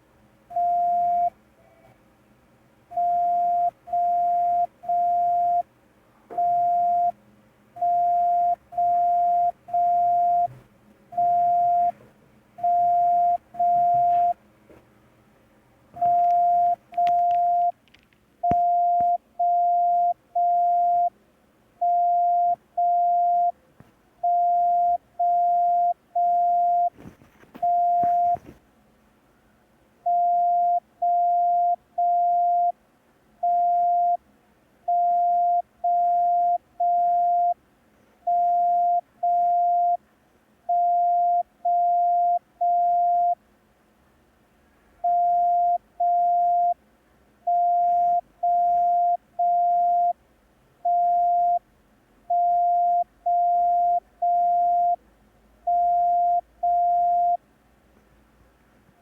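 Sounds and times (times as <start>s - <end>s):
morse code beeps: 3.0s - 5.6s, 6.4s - 7.1s, 7.8s - 10.5s, 11.2s - 12.0s, 12.6s - 14.4s, 16.0s - 17.7s, 18.4s - 21.1s, 21.8s - 23.5s, 24.2s - 27.0s, 27.6s - 28.4s, 34.9s - 37.6s, 38.3s - 40.0s, 40.7s - 43.4s, 45.0s - 46.8s, 47.5s - 50.2s, 50.9s - 51.6s, 52.3s - 55.0s, 55.7s - 57.4s.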